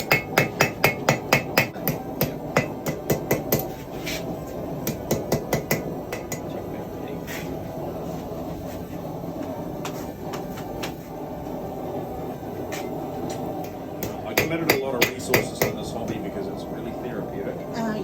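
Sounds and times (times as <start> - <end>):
hammer striking metal on anvil: 0.0 - 3.8, 4.8 - 6.6, 13.6 - 16.2.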